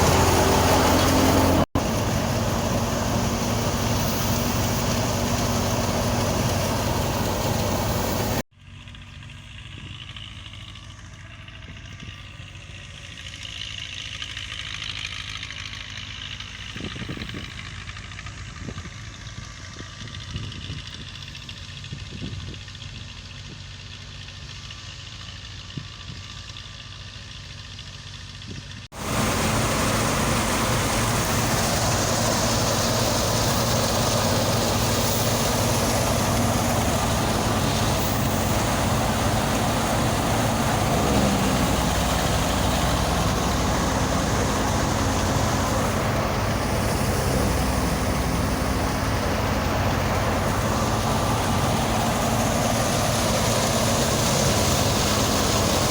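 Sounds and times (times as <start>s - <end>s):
loud machine rushing noise: 0.0s - 8.4s, 28.9s - 55.9s
harvest machinery engine running: 0.0s - 55.9s.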